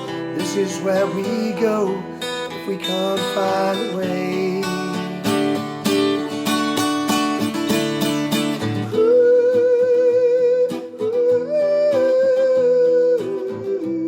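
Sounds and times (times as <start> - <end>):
acoustic guitar strumming chords: 0.0 - 14.0
held wavering melody line: 8.8 - 14.0.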